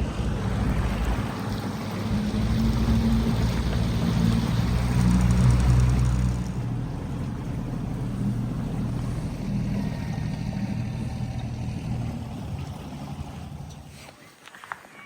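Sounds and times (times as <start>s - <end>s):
boat motor running: 0.0s - 14.1s
water rushing along hull: 0.0s - 14.2s.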